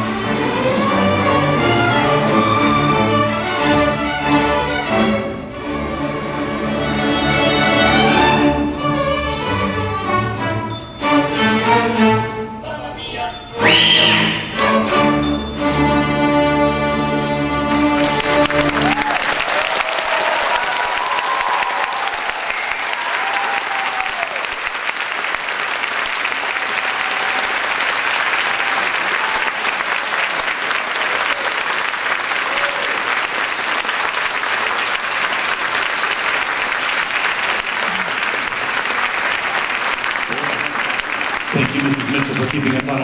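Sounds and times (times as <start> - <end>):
audience applause: 17.4 - 43.0
audience cheering: 18.0 - 43.0.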